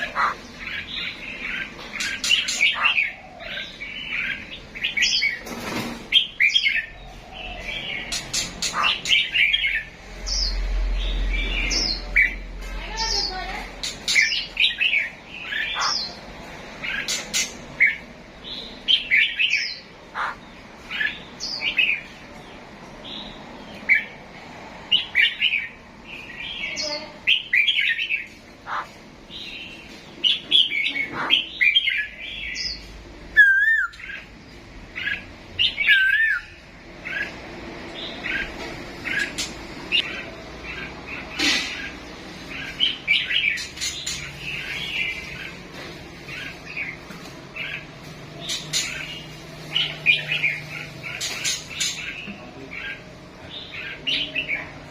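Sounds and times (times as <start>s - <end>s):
songbirds chirping and twittering: 0.0s - 54.9s
wavering bird whistles: 33.4s - 33.9s.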